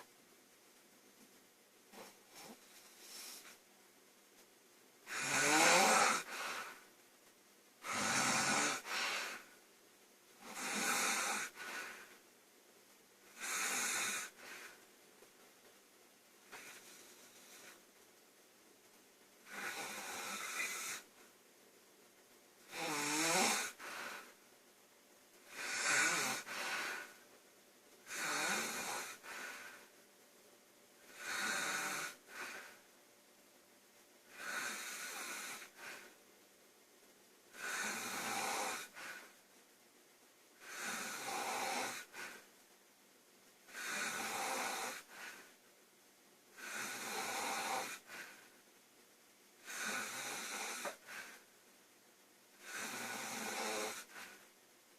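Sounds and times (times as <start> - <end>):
girl snoring: 5.0 - 6.8, 7.8 - 9.6, 10.4 - 12.2, 13.3 - 14.8, 19.4 - 21.1, 22.6 - 24.4, 25.5 - 27.2, 28.0 - 29.9, 31.0 - 32.8, 34.3 - 36.2, 37.5 - 39.3, 40.6 - 42.5, 43.7 - 45.5, 46.5 - 48.4, 49.6 - 51.5, 52.6 - 54.4.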